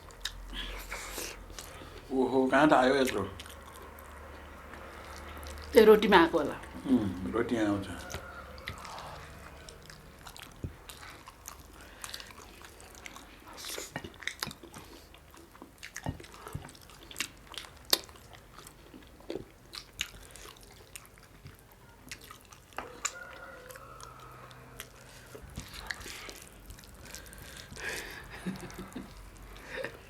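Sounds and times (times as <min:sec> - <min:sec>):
chewing and biting food: 0:00.0 - 0:02.2, 0:02.8 - 0:05.8, 0:06.5 - 0:30.0
wet mouth clicks and smacks: 0:13.6 - 0:18.2.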